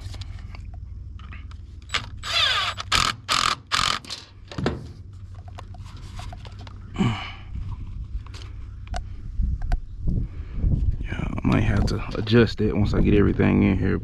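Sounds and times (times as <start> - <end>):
ratchet bursts: 1.9 - 4.3.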